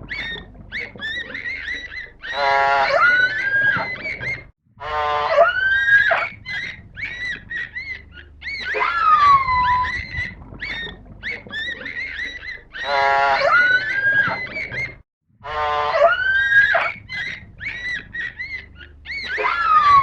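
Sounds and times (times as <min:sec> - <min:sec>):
whale whistles and chirps: 0:00.0 - 0:20.0
buzzy pulsed whale calls: 0:04.8 - 0:07.8, 0:08.4 - 0:17.0.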